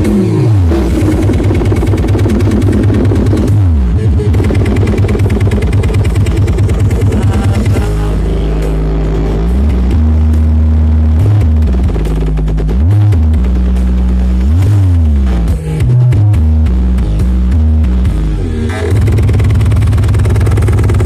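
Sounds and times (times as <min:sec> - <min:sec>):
loud electronic bass music: 0:00.0 - 0:21.0.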